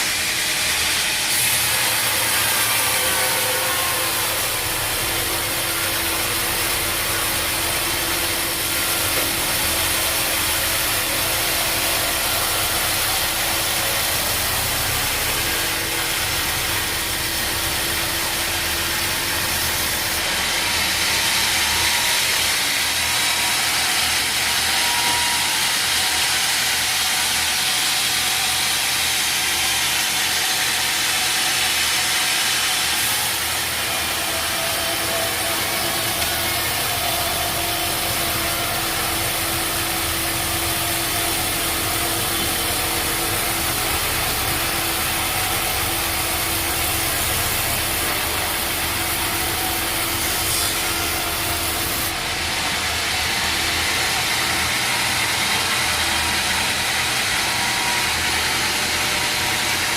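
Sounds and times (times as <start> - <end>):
saw cutting through wood: 0.0 - 59.9
steady hum: 1.7 - 21.7.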